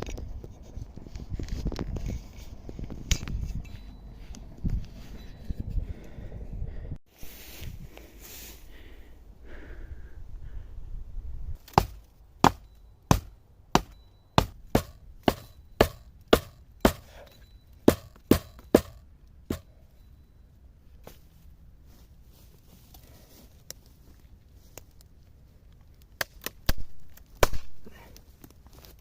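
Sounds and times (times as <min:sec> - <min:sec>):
blade chopping wood: 0:11.6 - 0:17.1, 0:17.9 - 0:19.7, 0:26.2 - 0:27.8
rustling handling noise: 0:20.8 - 0:26.0.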